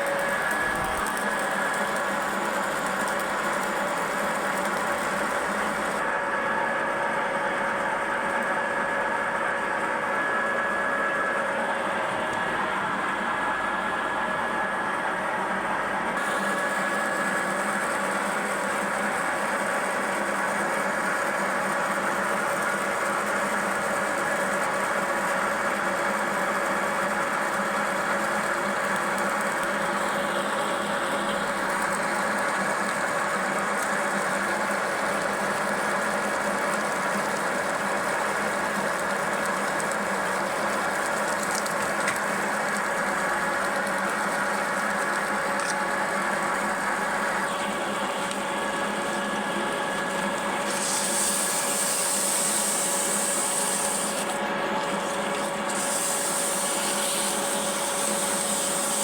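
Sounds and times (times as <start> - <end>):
metal lathe humming: 0.0 - 7.1, 41.2 - 59.0.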